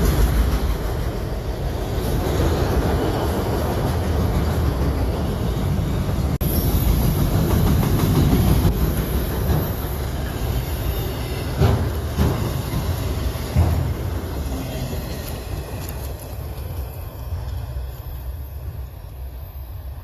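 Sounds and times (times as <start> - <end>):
freight train rumbling past: 0.0 - 20.0
wheel clacks over rail joints: 11.4 - 14.4.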